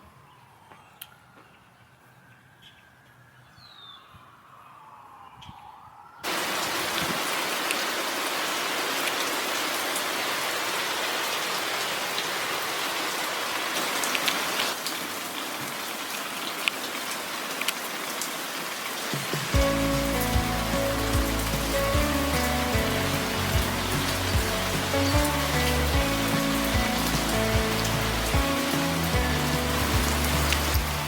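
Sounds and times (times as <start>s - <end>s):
steady rain falling: 6.2s - 31.0s.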